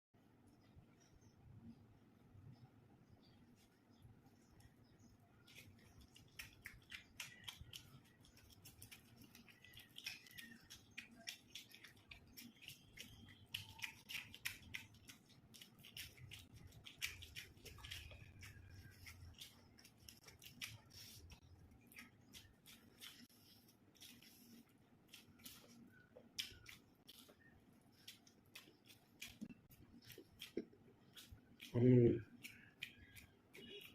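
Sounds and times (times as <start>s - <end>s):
person chewing: 5.0s - 33.9s.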